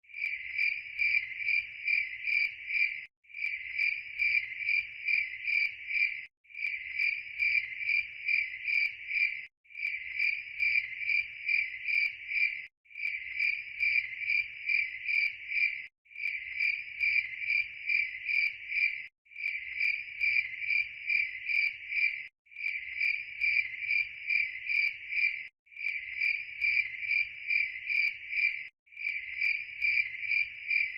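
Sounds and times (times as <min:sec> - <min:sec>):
crickets chirping: 0:00.2 - 0:30.9.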